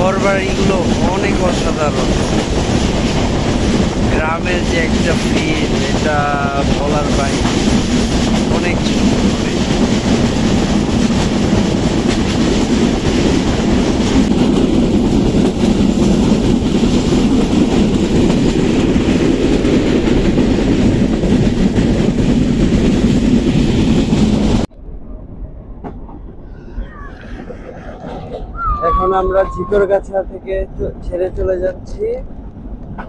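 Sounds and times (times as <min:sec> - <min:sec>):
clickety-clack of carriage: 0:00.0 - 0:24.6
train wheels rumbling on rails: 0:00.0 - 0:33.0.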